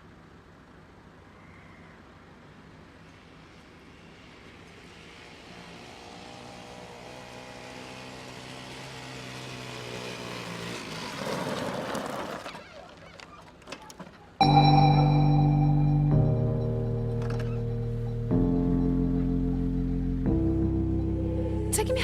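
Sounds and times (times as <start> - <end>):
engine humming: 14.4 - 22.0
music: 14.4 - 22.0.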